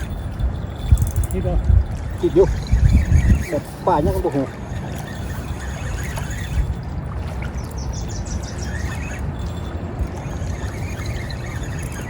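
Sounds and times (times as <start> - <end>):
river water moving: 0.0 - 12.0
wind buffeting microphone: 0.0 - 12.0.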